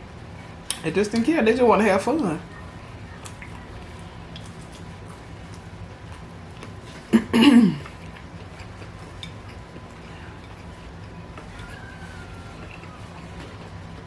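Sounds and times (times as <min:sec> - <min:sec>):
person chewing: 0:03.2 - 0:14.0.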